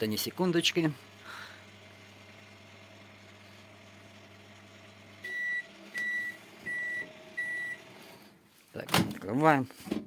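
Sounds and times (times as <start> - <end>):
microwave oven humming: 0.0 - 8.3
high microwave beeps: 5.2 - 7.9.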